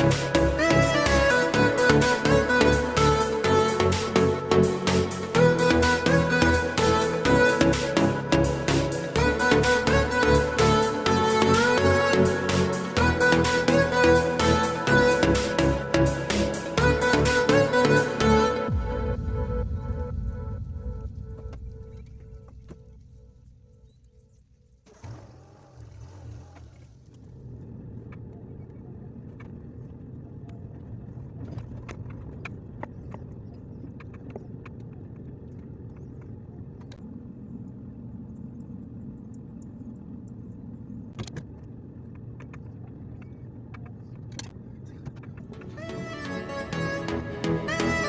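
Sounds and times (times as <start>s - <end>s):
vehicle engine rumble: 0.0s - 48.0s.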